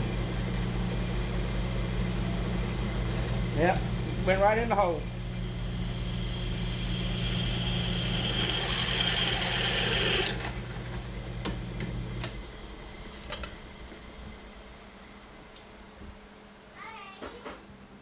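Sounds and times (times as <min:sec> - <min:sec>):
drill bit grinding through metal: 0:03.6 - 0:10.6
electric drill motor hum: 0:05.2 - 0:12.3.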